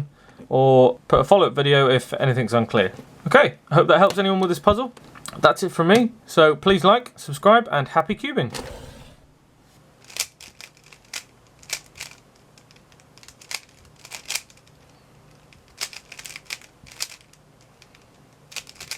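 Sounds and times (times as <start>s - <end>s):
faint steady hum: 0.0s - 18.9s.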